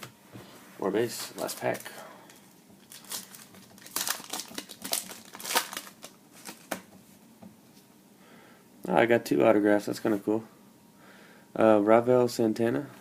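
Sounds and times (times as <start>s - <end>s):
wrapper tearing and crinkling: 2.8s - 6.8s.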